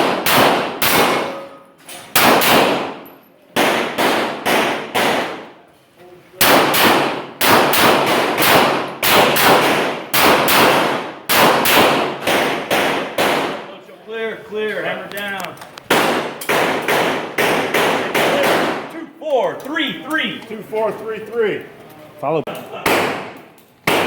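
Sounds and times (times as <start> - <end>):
rapid pistol gunshots with echo: 0.0 - 1.4, 2.1 - 3.0, 3.6 - 5.6, 6.4 - 13.8, 15.9 - 18.9, 22.8 - 24.0.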